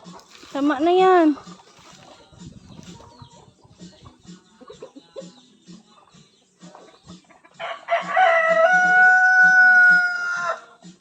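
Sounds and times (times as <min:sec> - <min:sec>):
rooster crowing: 0:07.6 - 0:10.7.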